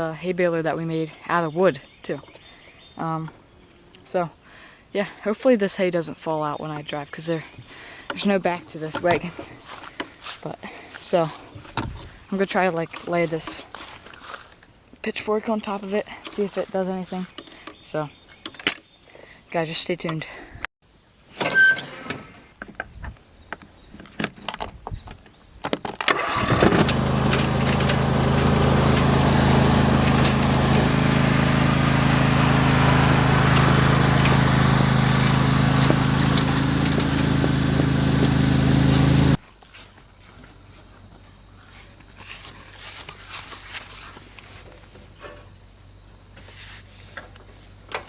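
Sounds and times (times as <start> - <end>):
lawn mower engine running: 26.1 - 39.4
knocks and clicks: 35.2 - 39.0.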